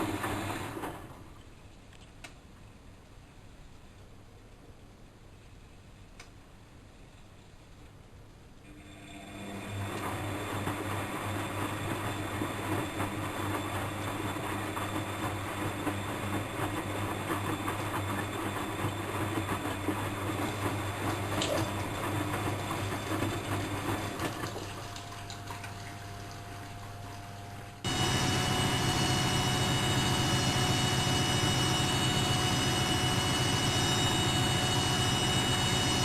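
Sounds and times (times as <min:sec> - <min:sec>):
washing machine motor humming: 0:00.0 - 0:01.3, 0:08.7 - 0:36.0
water and laundry sloshing: 0:19.8 - 0:27.8.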